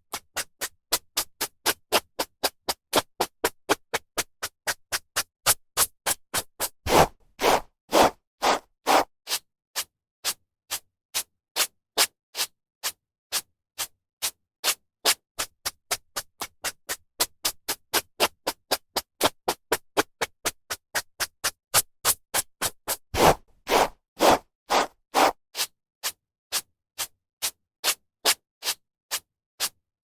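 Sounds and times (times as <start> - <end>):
hairbrush brushing hair: 23.2 - 25.3.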